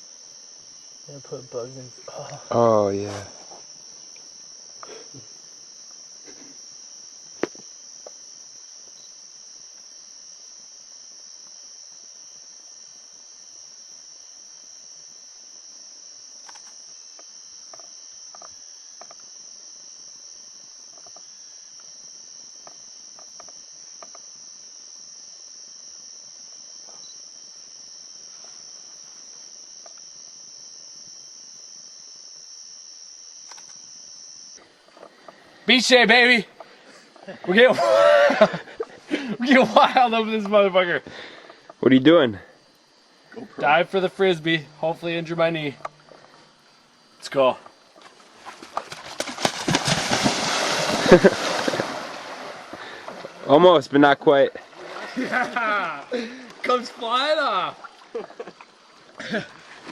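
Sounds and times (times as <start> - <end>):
crickets trilling: 0.0 - 59.9
sharp click: 33.4 - 33.8.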